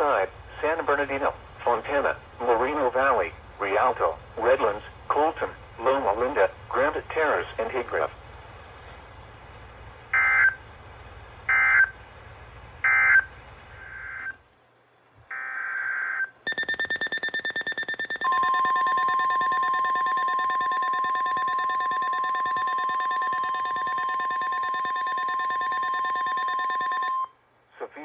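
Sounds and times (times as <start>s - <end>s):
loud pulsing alert tone: 16.5s - 27.2s
screeching digital data bursts: 16.5s - 27.2s
steady warning tone: 16.5s - 27.2s.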